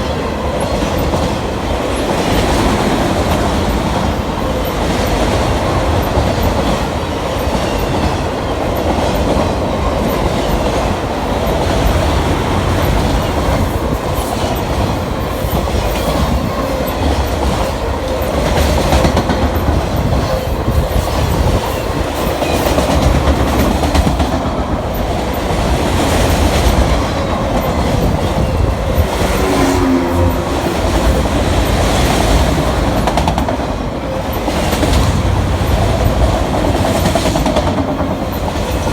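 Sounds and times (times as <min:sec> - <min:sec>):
clickety-clack over rail joints: 0:00.0 - 0:38.9
steel wheels rumbling on rail: 0:00.0 - 0:38.9.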